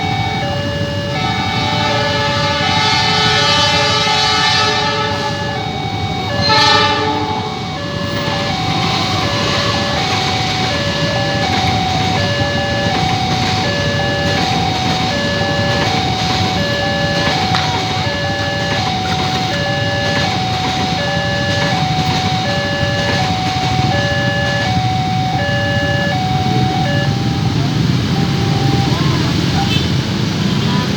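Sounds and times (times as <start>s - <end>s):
two-tone electronic crossing alarm: 0.0s - 30.1s
train rumbling past: 0.0s - 30.9s.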